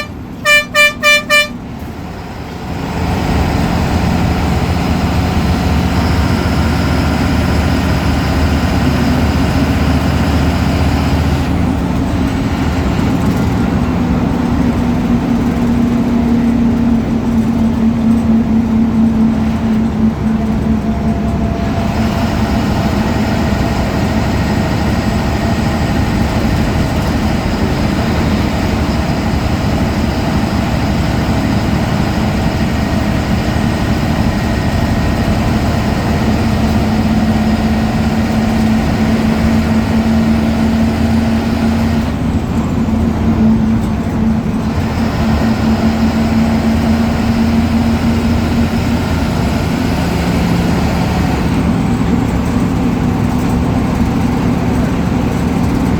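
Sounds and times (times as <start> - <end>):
diesel bus engine running: 0.0 - 55.9.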